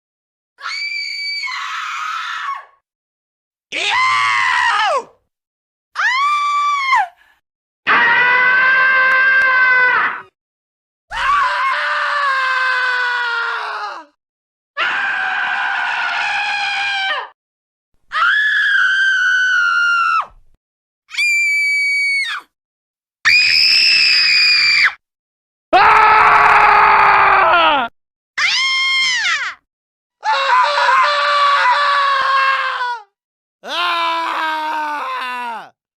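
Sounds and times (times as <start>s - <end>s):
high-pitched screams: 7.9s - 10.3s, 18.1s - 20.3s, 21.1s - 22.5s, 23.3s - 25.0s.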